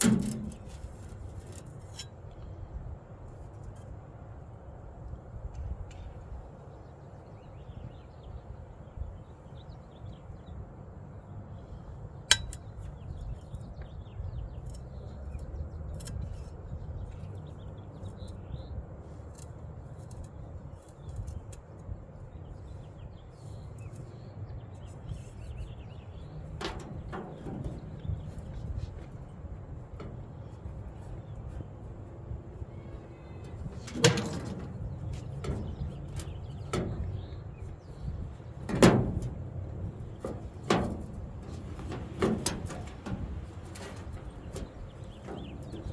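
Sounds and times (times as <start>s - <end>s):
sheet metal clinks and taps: 0.0s - 0.8s, 33.4s - 37.2s, 38.6s - 45.9s
low background rumble: 22.0s - 45.9s.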